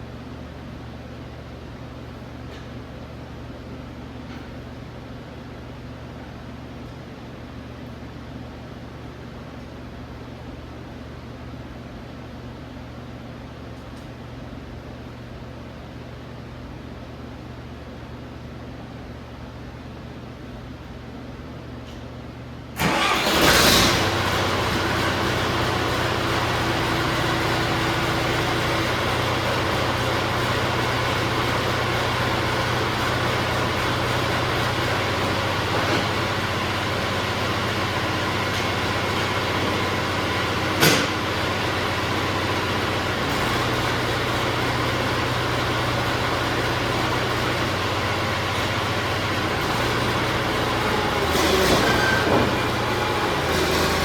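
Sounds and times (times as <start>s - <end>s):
bulldozer diesel engine running: 22.8s - 54.0s.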